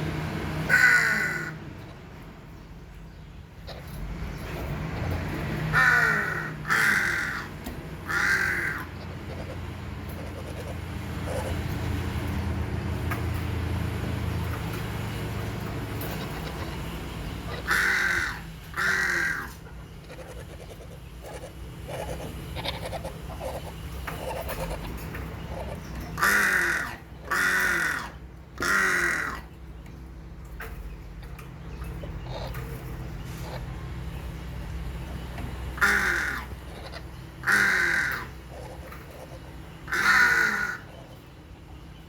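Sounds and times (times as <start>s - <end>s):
bird harsh cawing calls: 0.6s - 2.0s, 5.0s - 12.3s, 16.0s - 30.0s, 35.7s - 41.2s.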